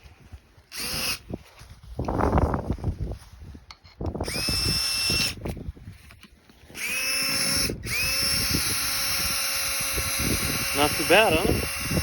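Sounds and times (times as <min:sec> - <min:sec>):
power drill whining: 0:00.7 - 0:01.2, 0:04.2 - 0:05.6, 0:06.5 - 0:12.0.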